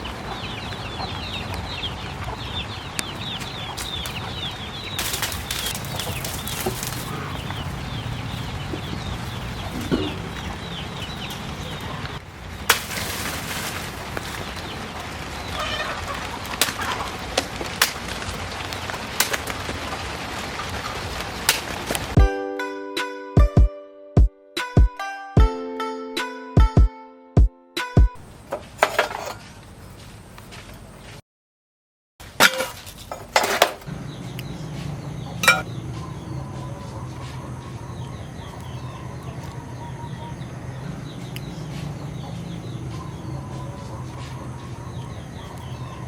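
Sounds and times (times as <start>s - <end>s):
birds chirping: 0.0s - 22.2s, 33.1s - 46.0s
fowl clucking: 15.6s - 17.2s
music: 22.2s - 28.2s.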